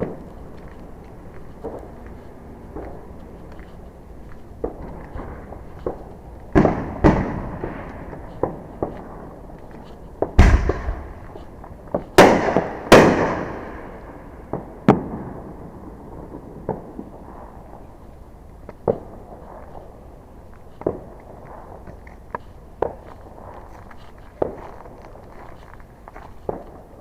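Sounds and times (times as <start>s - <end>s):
fireworks exploding: 4.6s - 17.9s.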